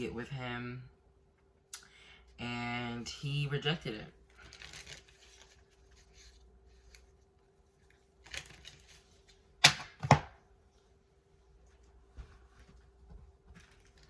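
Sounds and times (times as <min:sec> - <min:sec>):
faint steady hum: 0:00.0 - 0:14.0
card rustle: 0:04.4 - 0:09.4.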